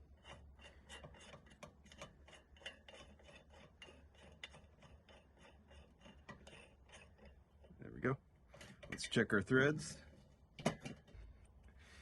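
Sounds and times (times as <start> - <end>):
metal scraping and clicking: 0.0 - 7.8.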